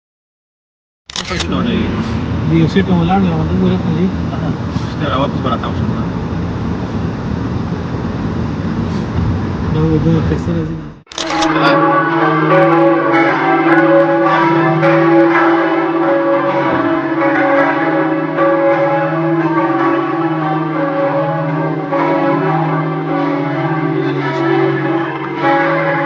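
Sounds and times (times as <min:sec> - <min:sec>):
church bells pealing: 0:01.4 - 0:06.1, 0:11.2 - 0:26.0.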